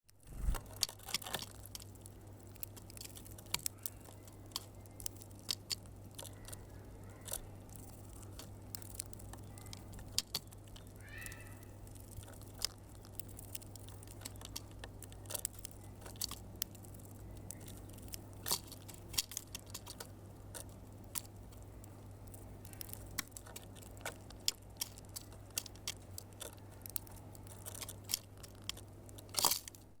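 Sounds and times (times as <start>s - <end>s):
low hum: 0.1s - 0.8s
birds pecking: 0.1s - 30.0s
bird chirp: 10.4s - 11.8s.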